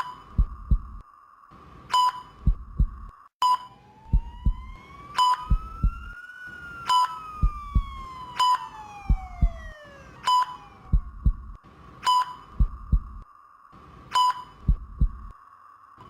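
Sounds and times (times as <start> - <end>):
patient monitor beeps: 0.0 - 1.0, 1.9 - 11.4, 12.0 - 13.2, 14.1 - 15.3
soft heartbeat thumps: 0.3 - 1.0, 2.4 - 3.1, 4.0 - 6.2, 7.3 - 8.2, 8.9 - 10.0, 10.8 - 11.6, 12.5 - 13.3, 14.6 - 15.4
slow rising and falling tone: 3.8 - 11.6.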